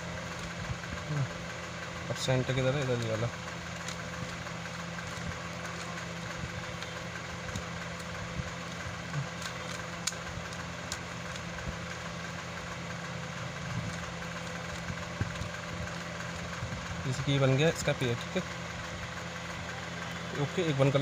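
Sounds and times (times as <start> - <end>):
low mechanical motor hum: 0.0 - 21.0
plastic cube layers clicking: 5.0 - 11.6.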